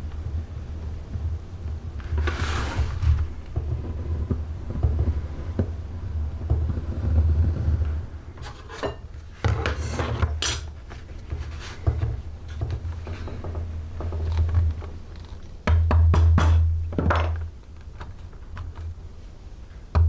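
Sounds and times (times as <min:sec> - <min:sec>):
scratchy scraping strokes: 0:02.0 - 0:04.2.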